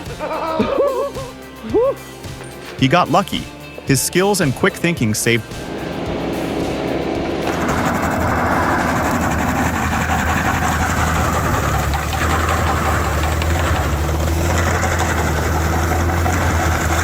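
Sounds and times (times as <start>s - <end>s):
heavy engine humming: 1.3s - 17.0s
rushing mechanical noise: 4.2s - 17.0s.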